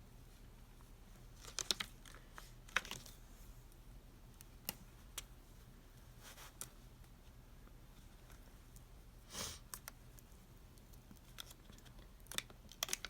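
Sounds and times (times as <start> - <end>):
faint crinkling of sheet: 4.4 - 13.0.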